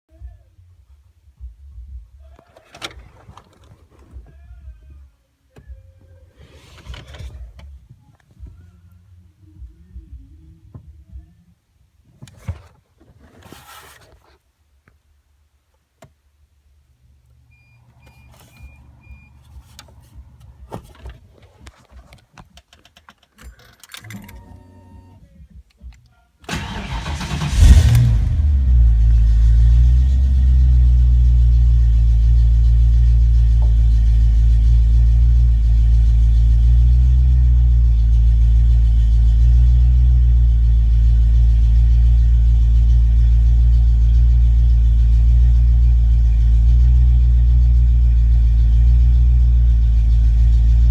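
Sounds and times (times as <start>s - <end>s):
car engine cranking and starting: 2.3s - 4.4s, 6.3s - 8.6s, 17.6s - 25.2s, 26.4s - 50.9s
faint clicks and handling noises: 2.3s - 4.4s, 18.0s - 26.2s
car engine idling: 2.3s - 4.6s, 17.8s - 22.0s, 26.5s - 50.9s.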